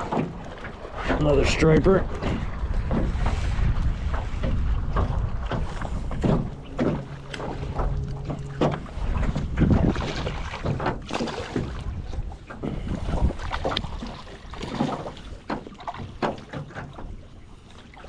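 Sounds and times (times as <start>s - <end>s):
wind rumbling on microphone: 0.0s - 18.0s
steady low hum: 4.6s - 12.0s.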